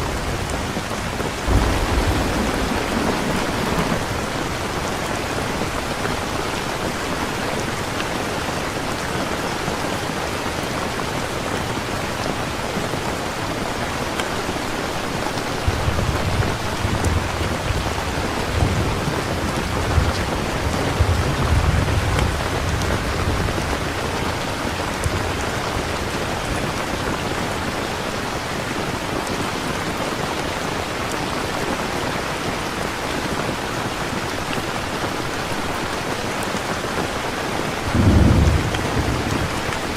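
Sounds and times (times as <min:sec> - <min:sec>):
rumble of thunder: 0:00.0 - 0:05.8, 0:15.6 - 0:24.0, 0:37.9 - 0:39.9
heavy rain: 0:00.0 - 0:39.9.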